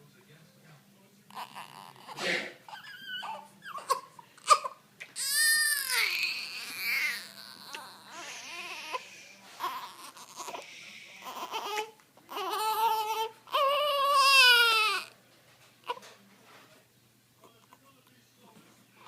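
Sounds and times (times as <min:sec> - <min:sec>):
baby crying: 0:01.3 - 0:15.2.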